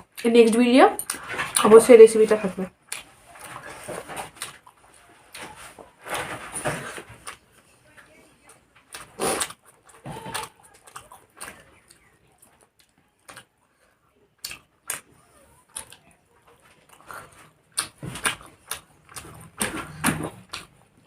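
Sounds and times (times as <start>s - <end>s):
chewing and mouth noises: 2.8s - 5.6s, 8.4s - 21.0s.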